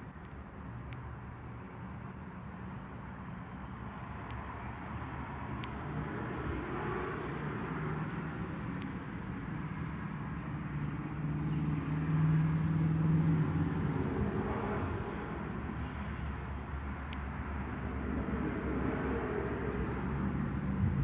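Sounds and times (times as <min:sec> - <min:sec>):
low engine-like hum: 0:09.9 - 0:21.0.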